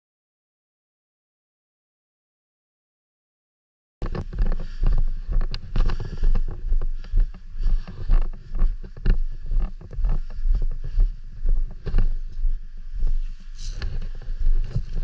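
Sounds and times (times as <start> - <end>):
footsteps walking: 4.0 - 15.0
microphone handling rumble: 4.0 - 15.0
wind: 4.0 - 15.0.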